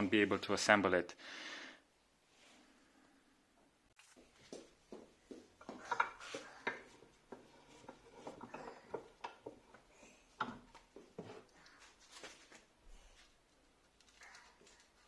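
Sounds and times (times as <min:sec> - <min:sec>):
metal parts clicking and tapping: 0:05.7 - 0:11.8.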